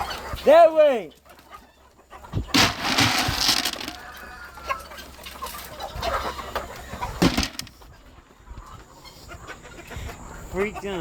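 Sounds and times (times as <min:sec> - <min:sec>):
chickens clucking: 0:00.0 - 0:11.0
loud rustling: 0:02.5 - 0:04.2, 0:07.2 - 0:07.8.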